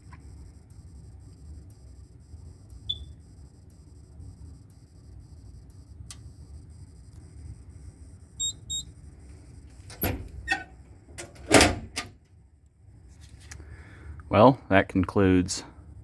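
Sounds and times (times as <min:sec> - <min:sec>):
high electronic beeps: 0:02.8 - 0:03.2, 0:08.4 - 0:08.9
knocks and clunks: 0:09.9 - 0:12.2.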